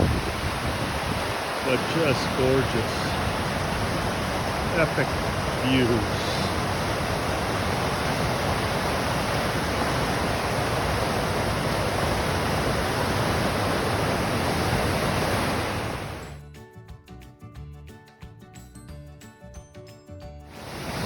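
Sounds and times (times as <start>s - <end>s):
river rapids and waterfall rushing: 0.0s - 16.4s, 20.5s - 21.0s
soft music with held notes: 16.4s - 20.6s.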